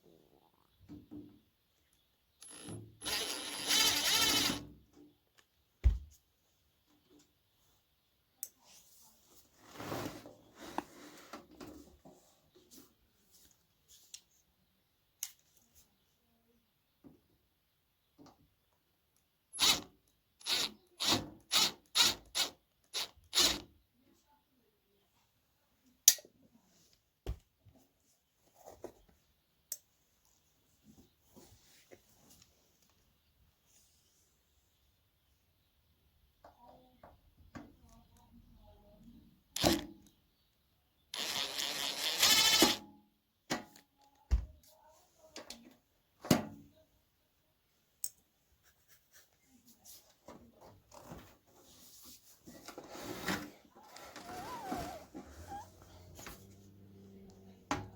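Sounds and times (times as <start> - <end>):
small drill running: 2.4 - 4.6, 19.6 - 19.8, 20.4 - 23.6, 41.2 - 42.8.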